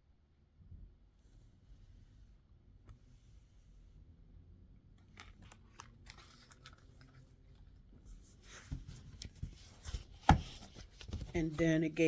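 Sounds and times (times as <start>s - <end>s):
rustling and crinkling paper: 5.0s - 11.8s.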